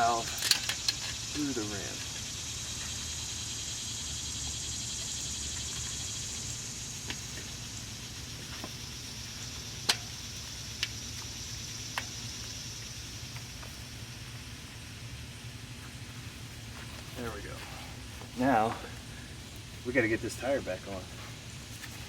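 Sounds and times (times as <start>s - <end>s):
steady background hiss: 0.0s - 22.0s.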